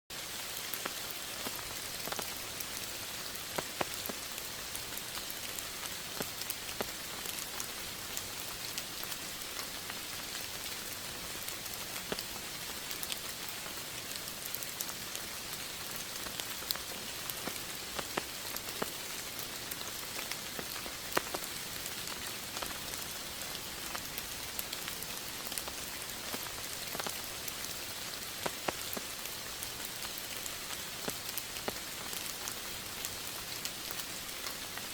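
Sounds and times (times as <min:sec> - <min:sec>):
raindrops ticking: 0:00.1 - 0:34.9
steady rain hissing: 0:00.1 - 0:34.9.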